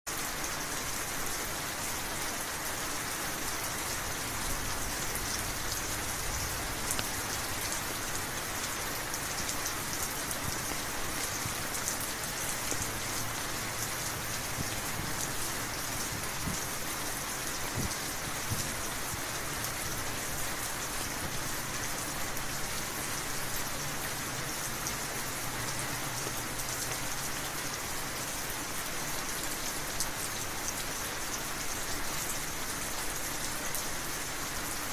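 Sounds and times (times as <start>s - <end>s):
rain drops ticking on a surface: 0.1s - 34.9s.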